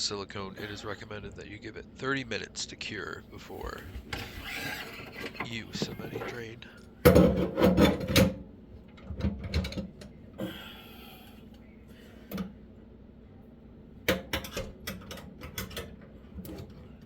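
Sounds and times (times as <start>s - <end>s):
hard parts clicking and knocking: 4.1s - 8.4s.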